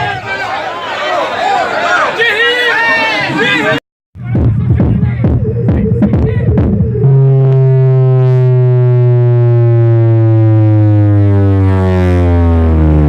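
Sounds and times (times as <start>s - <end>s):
subwoofer bass test tone: 4.2s - 13.0s.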